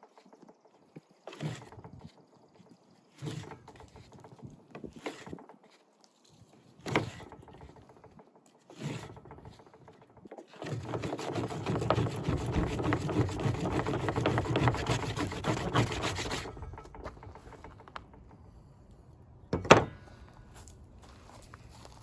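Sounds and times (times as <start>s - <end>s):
board rubbing and scraping: 3.1s - 5.7s, 6.6s - 7.8s, 8.6s - 18.1s
wooden board knocks: 19.5s - 20.0s.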